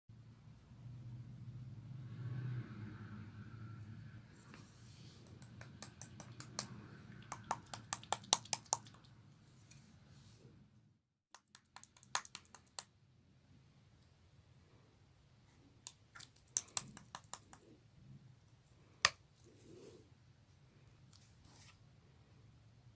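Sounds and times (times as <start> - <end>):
slime clicking and popping: 5.4 - 9.0, 15.9 - 17.6.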